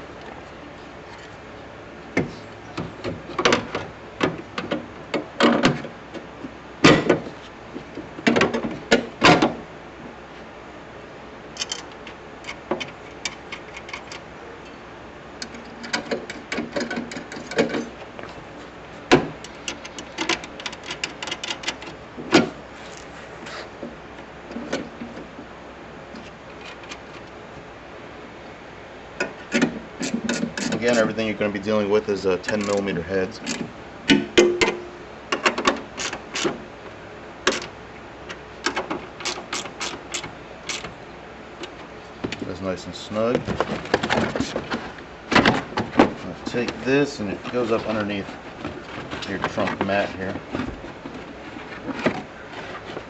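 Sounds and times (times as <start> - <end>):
tools clicking and knocking on metal: 15.4 - 17.9, 19.1 - 22.5, 32.4 - 36.6.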